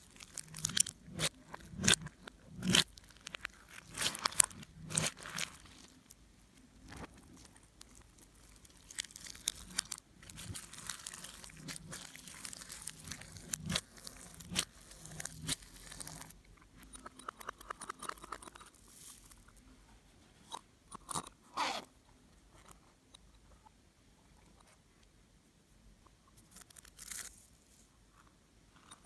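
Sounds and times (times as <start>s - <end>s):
slime popping: 0.0s - 6.1s, 6.8s - 16.4s
wet crackling of slime: 0.0s - 19.6s.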